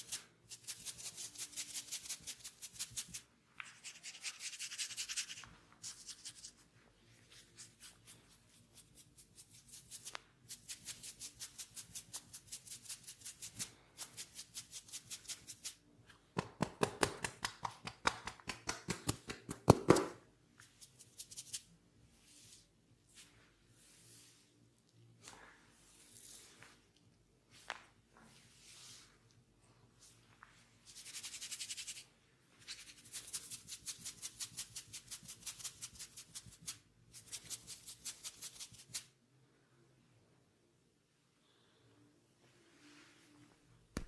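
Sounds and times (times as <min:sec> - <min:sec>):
hands tapping on a head: 0:16.4 - 0:20.2.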